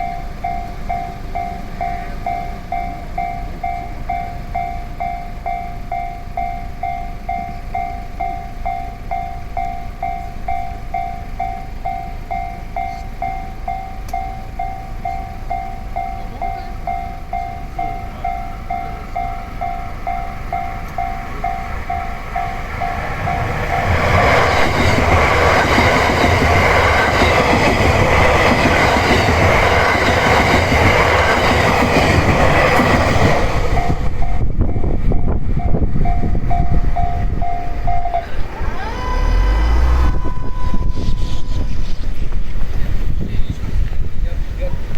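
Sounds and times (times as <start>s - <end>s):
level crossing warning bell: 0.0s - 41.9s
train rumble and wheel clatter: 0.0s - 44.9s.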